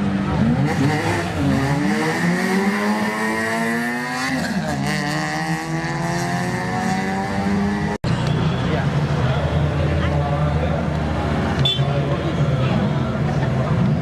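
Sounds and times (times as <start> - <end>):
racing car engine accelerating: 0.2 - 8.0.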